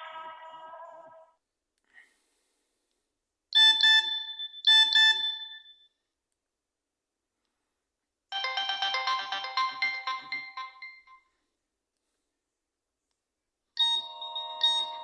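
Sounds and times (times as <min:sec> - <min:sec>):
mobile phone ringtone: 0:08.3 - 0:11.2, 0:13.8 - 0:15.0
polyphonic ringtone melody: 0:08.3 - 0:11.2, 0:13.8 - 0:15.0.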